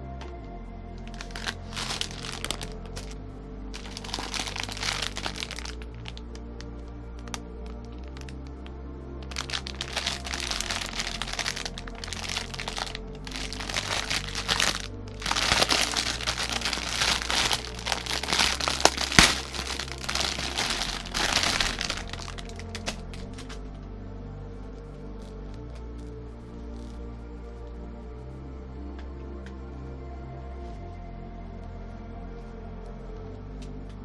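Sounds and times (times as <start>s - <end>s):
background music: 0.0s - 34.0s
plastic packaging crinkling: 1.1s - 3.2s, 3.8s - 6.3s, 8.1s - 8.4s, 9.2s - 23.6s
sharp crack: 9.2s - 23.6s.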